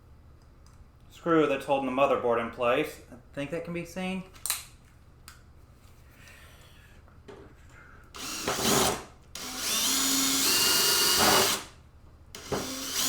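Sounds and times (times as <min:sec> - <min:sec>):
power drill motor whine: 0:08.2 - 0:11.7, 0:12.4 - 0:13.0.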